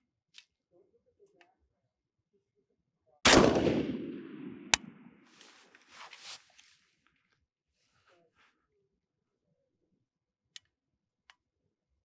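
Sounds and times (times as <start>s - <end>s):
rifle shot echoing: 3.3s - 5.1s
sharp crack: 3.3s - 5.1s.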